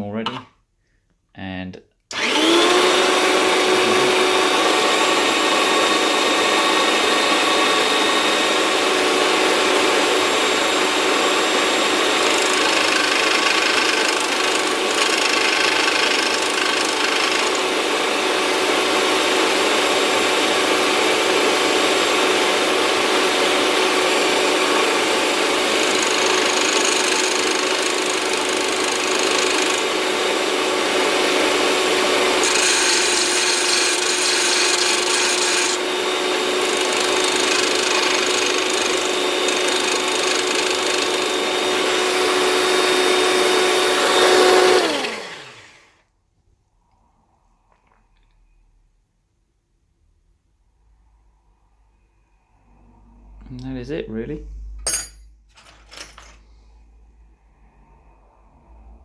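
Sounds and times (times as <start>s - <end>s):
drill bit grinding: 2.1s - 45.9s
drill bit sharpener whine: 2.1s - 45.9s.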